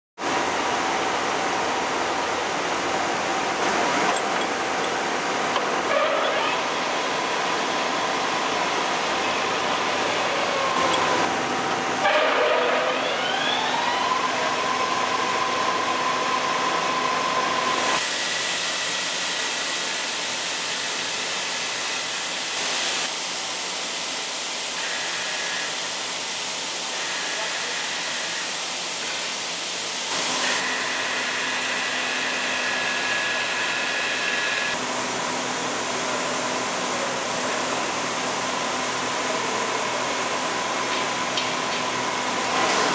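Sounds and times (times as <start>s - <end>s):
metal lathe whining: 24.8s - 34.8s.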